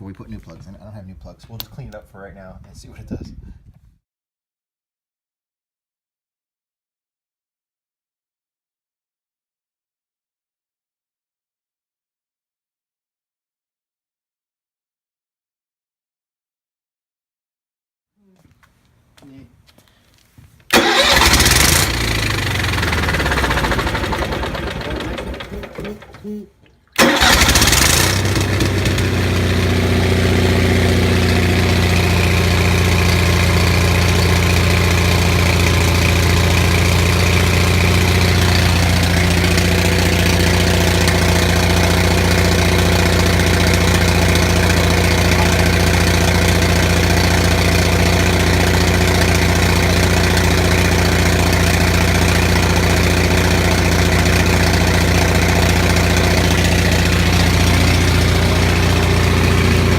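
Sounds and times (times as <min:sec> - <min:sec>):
generator engine running: 0:20.7 - 0:26.4, 0:27.0 - 0:59.9.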